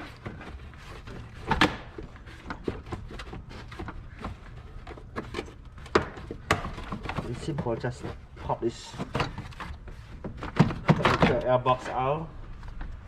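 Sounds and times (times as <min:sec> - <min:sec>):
hand tools clicking and knocking: 0:00.0 - 0:09.6.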